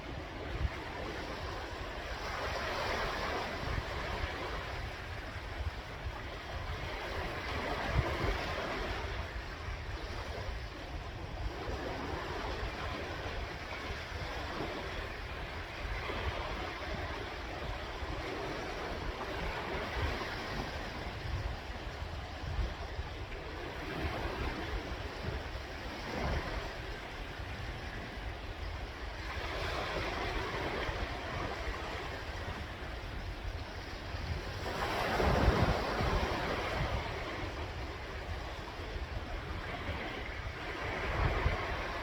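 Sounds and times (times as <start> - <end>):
sea waves washing in: 10.5 - 42.0.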